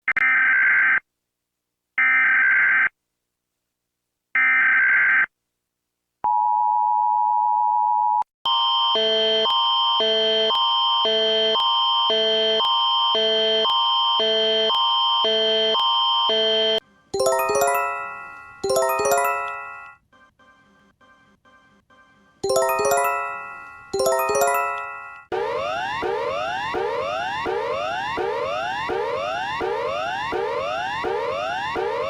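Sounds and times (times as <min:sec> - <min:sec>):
high tone over alternating tones: 0:22.4 - 0:25.3.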